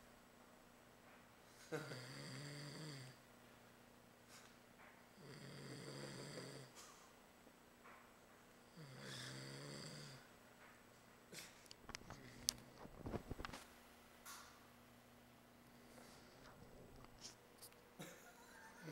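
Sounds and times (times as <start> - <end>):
person snoring: 1.6 - 3.2, 5.1 - 6.8, 8.6 - 10.3.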